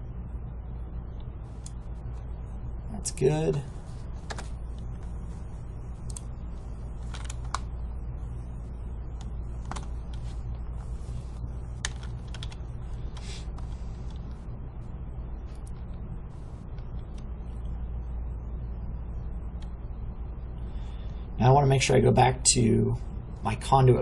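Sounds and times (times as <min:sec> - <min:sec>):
steady low hum: 0:00.0 - 0:24.0
keyboard and mouse clicks: 0:07.1 - 0:07.7, 0:09.2 - 0:10.2, 0:11.8 - 0:14.4.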